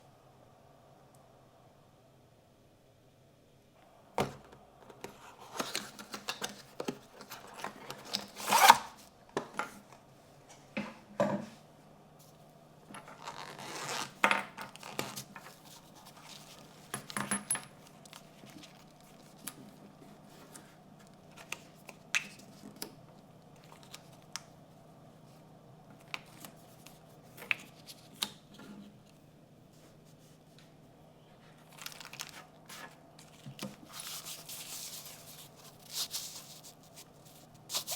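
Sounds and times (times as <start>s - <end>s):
box and wrapping rustling: 5.0s - 9.0s, 31.5s - 37.9s.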